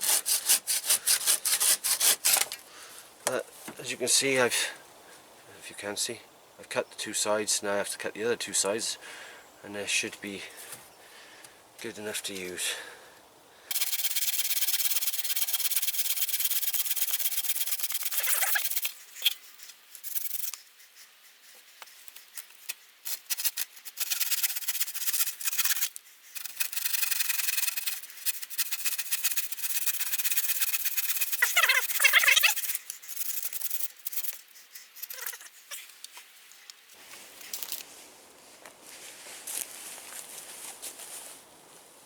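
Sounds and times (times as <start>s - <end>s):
hand tool scraping a log: 0.0s - 2.6s, 13.7s - 36.6s.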